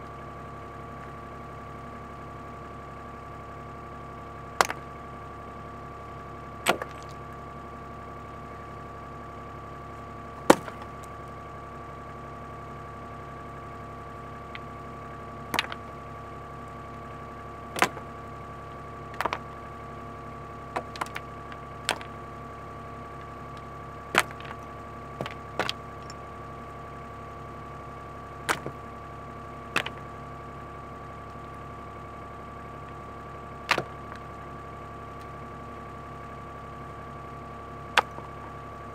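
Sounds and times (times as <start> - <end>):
sharp knocks: 10.5 - 10.9.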